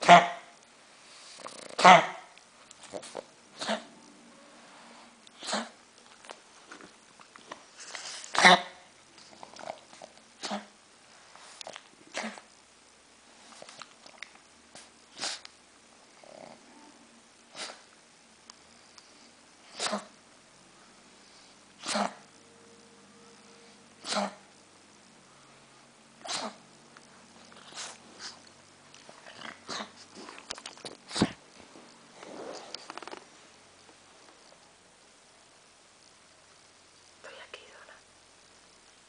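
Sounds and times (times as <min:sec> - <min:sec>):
dog coughing: 0:01.8 - 0:02.3, 0:21.8 - 0:22.2, 0:24.0 - 0:24.5, 0:26.2 - 0:26.6.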